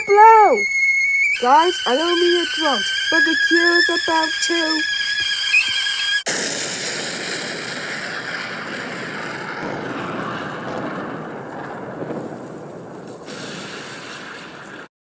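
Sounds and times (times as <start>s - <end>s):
explosion with long rumble: 6.3s - 14.9s.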